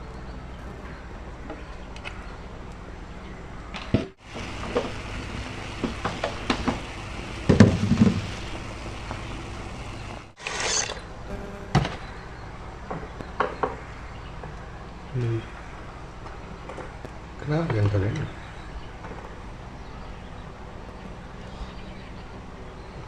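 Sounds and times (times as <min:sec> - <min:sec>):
steady hiss: 0:04.2 - 0:12.1.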